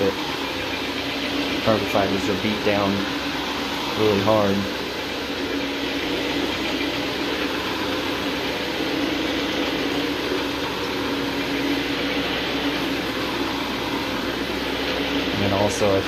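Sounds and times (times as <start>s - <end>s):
carpet cleaning machine motor drone: 0.0s - 16.0s
steady hum: 0.0s - 16.0s.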